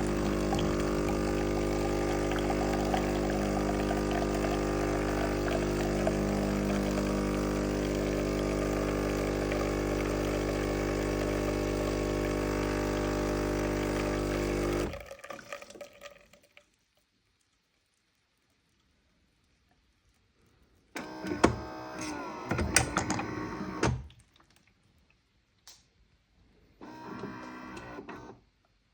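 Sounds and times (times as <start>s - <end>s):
espresso machine pump running: 0.0s - 15.1s
coffee flowing into cup: 0.0s - 16.7s.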